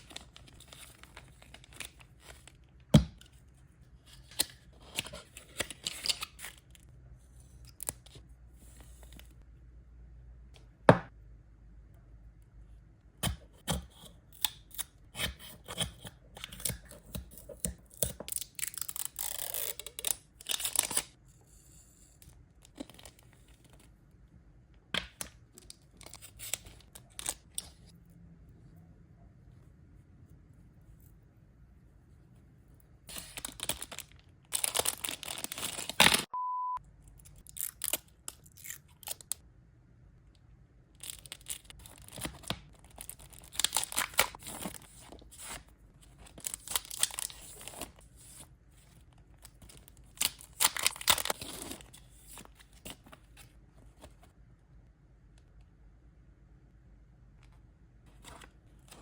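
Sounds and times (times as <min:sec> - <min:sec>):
packaging rustling and tearing: 0:33.1 - 0:36.3, 0:41.0 - 0:48.4, 0:49.5 - 0:53.2.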